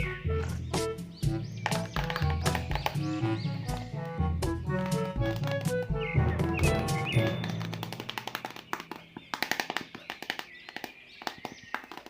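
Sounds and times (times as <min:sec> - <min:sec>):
background music with percussion: 0:00.0 - 0:08.6.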